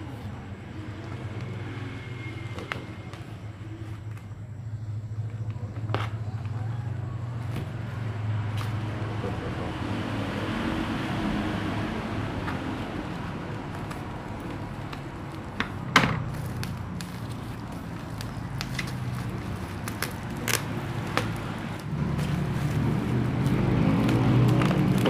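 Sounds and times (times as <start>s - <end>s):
packaging rustling and crinkling: 16.2s - 25.0s.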